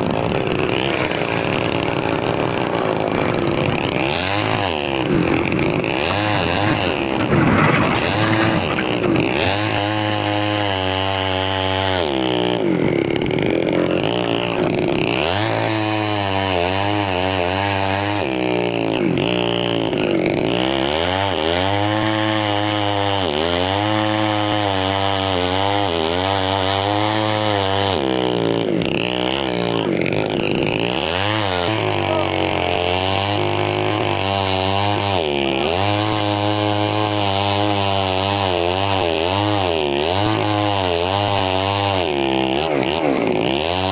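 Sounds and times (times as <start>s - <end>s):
chainsaw cutting tree: 0.0s - 43.9s.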